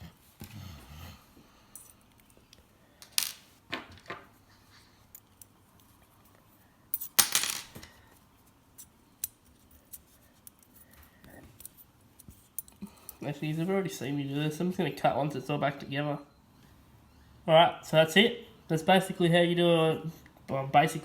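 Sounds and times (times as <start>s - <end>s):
metal parts and tools clinking: 6.9s - 8.0s.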